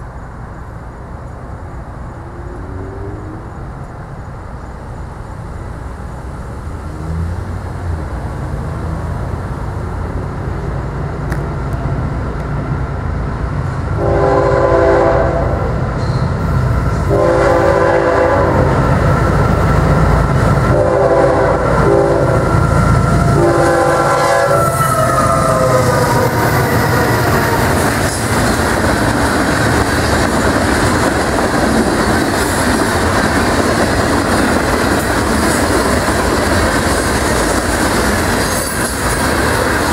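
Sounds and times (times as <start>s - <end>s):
diesel locomotive rumble: 0.0s - 39.9s
train cars rushing past: 0.0s - 39.9s
train horn blasts: 14.0s - 16.2s, 17.0s - 18.8s, 20.7s - 28.0s
train wheels clattering: 24.5s - 39.9s.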